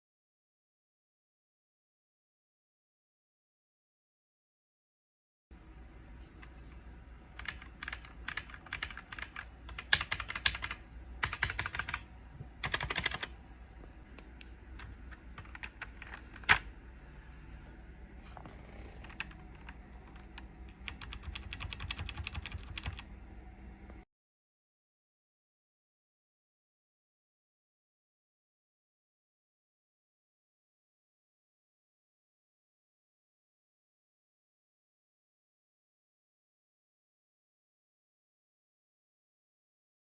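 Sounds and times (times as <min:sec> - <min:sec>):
faint steady hum: 0:05.5 - 0:24.1
mechanical keyboard key clicks: 0:12.6 - 0:13.3.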